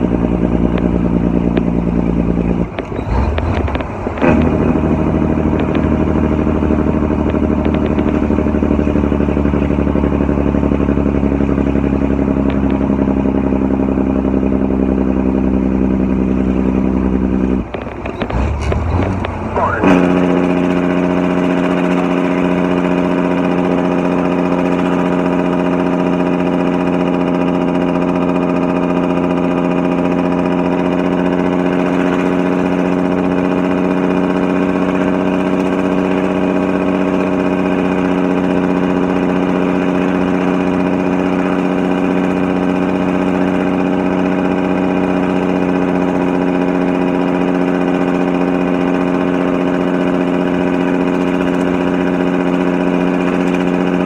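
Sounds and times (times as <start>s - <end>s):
truck engine brake: 0.7s - 8.2s, 17.5s - 25.7s.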